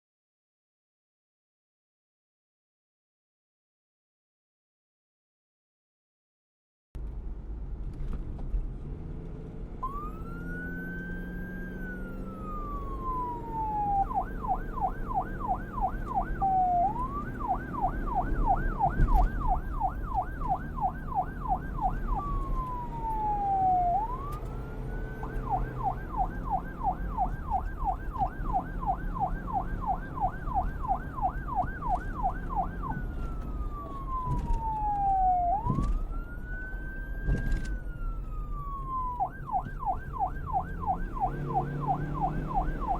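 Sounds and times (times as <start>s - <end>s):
low vehicle rumble: 7.0s - 42.9s
police siren wail and yelp: 9.8s - 42.9s.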